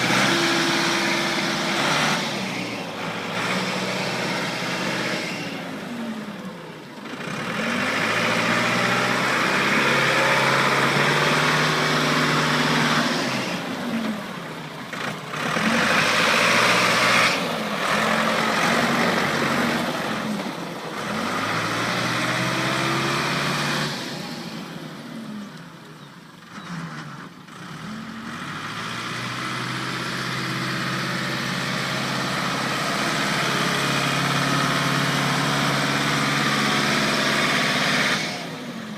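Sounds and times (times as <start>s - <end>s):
diesel engine revving: 0.0s - 38.9s.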